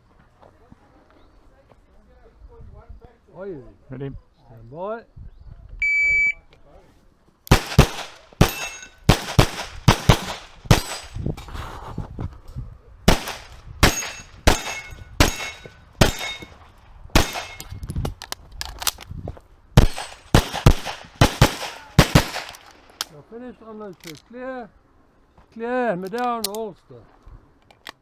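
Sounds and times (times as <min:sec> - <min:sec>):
handgun shots: 0:07.5 - 0:11.6, 0:13.1 - 0:19.1, 0:19.8 - 0:23.2.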